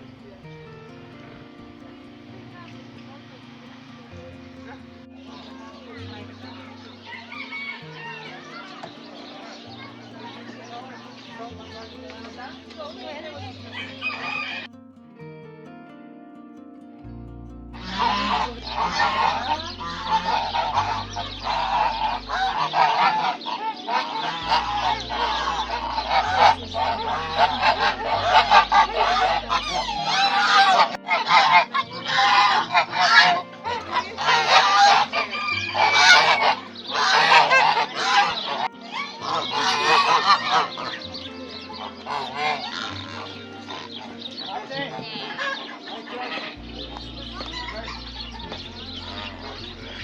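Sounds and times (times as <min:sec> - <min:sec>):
music with low bass: 0:00.0 - 0:50.0
geese honking: 0:02.6 - 0:14.7, 0:17.8 - 0:50.0.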